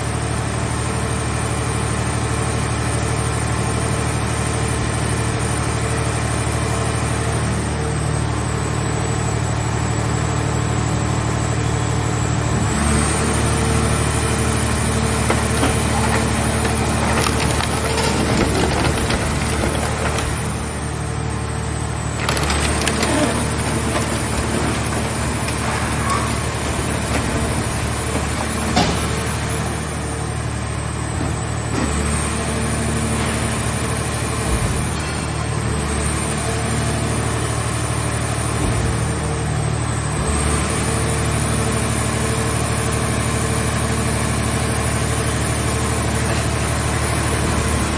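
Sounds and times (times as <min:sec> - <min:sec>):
hydraulic power unit humming: 0:09.4 - 0:38.0
metal cracking and crunching: 0:13.5 - 0:30.4.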